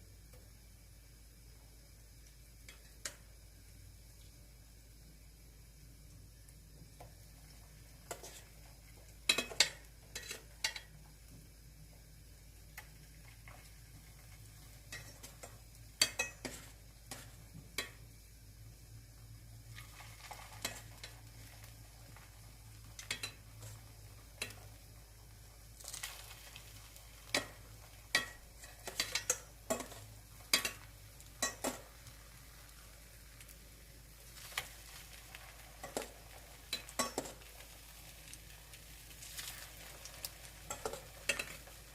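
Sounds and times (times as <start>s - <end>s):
pancakes sizzling in oil: 0.0s - 41.9s
utensil clicking against pan: 24.4s - 24.7s, 27.3s - 31.8s, 40.6s - 41.6s.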